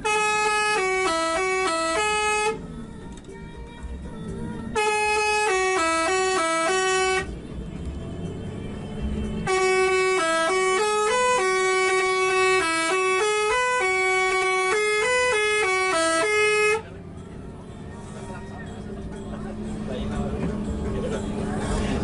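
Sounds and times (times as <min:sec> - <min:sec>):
bus horn playing stepped notes: 0:00.0 - 0:02.6, 0:04.7 - 0:07.3, 0:09.4 - 0:16.9.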